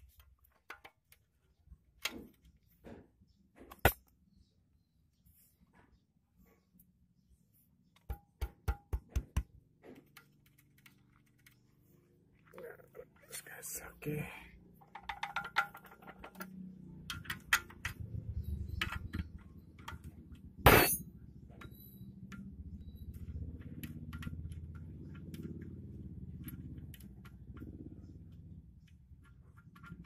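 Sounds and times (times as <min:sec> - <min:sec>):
metal tools clinking: 0:20.7 - 0:22.0.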